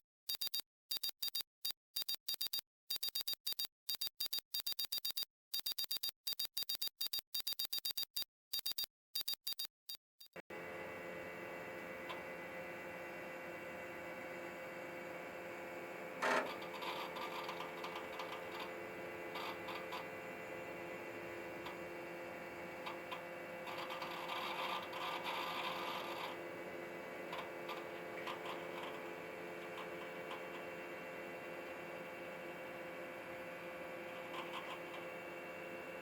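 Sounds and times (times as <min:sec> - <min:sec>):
computer humming: 0:10.4 - 0:36.0
rapid mechanical clicking: 0:16.1 - 0:20.3, 0:20.9 - 0:26.6, 0:27.2 - 0:30.7.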